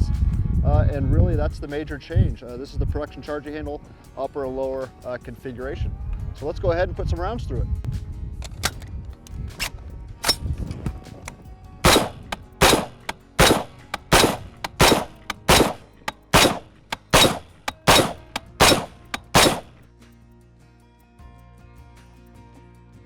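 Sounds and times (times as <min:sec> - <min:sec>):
rifle shots with echo: 0:11.9 - 0:19.7.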